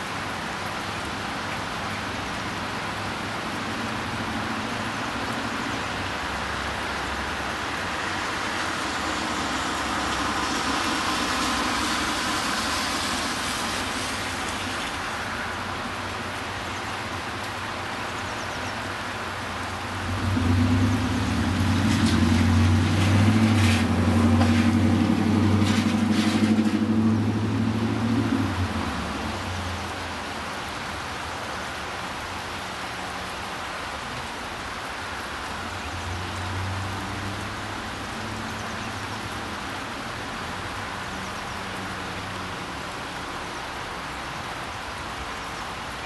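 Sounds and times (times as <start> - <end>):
car tyres swishing on wet road: 0.0 - 46.0
steady rain hiss: 0.0 - 46.0
vehicle engine humming: 1.7 - 31.3.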